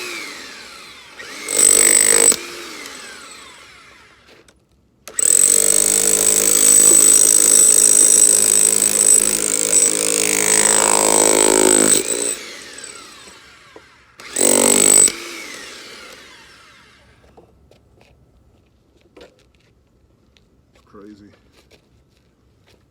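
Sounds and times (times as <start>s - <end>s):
jackhammer rattling: 0.0s - 3.6s, 5.1s - 16.4s.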